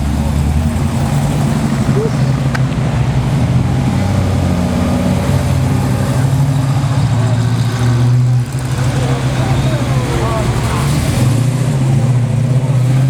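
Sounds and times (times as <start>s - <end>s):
car and truck engines driving past: 0.0s - 13.0s.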